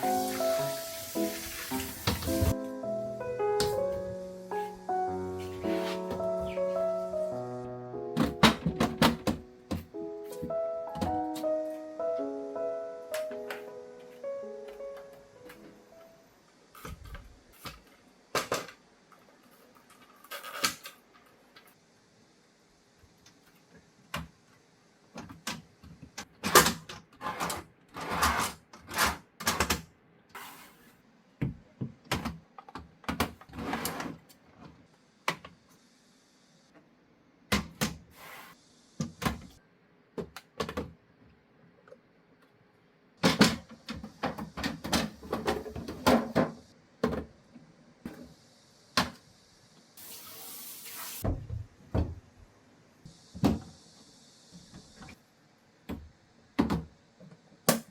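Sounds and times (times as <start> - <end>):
refrigerator drawers and containers clattering: 8.2 - 9.9, 43.2 - 47.3.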